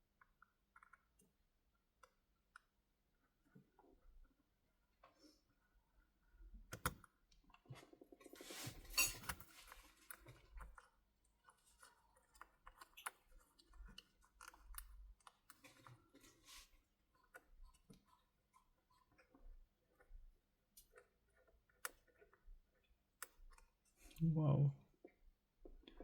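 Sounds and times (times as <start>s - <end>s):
small hand tools clicking and scraping: 8.3s - 24.2s.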